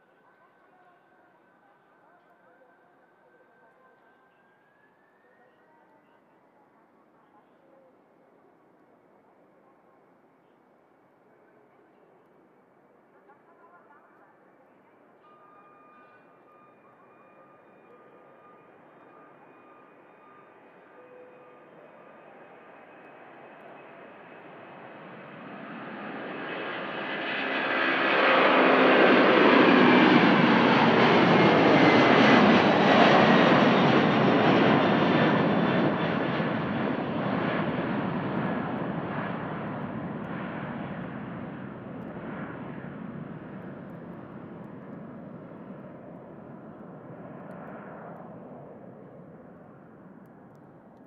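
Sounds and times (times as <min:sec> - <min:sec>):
jet engines roaring at takeoff: 0:21.7 - 0:51.0.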